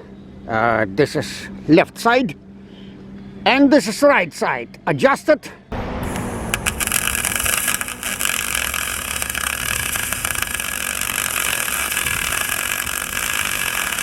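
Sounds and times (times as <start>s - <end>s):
welding arc hissing: 6.1s - 14.0s.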